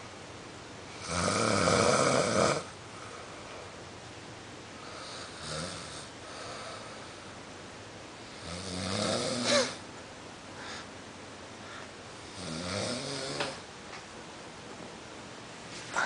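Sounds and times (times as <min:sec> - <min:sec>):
man snoring: 0:01.0 - 0:02.7, 0:05.0 - 0:06.8, 0:08.4 - 0:09.8, 0:12.2 - 0:13.6.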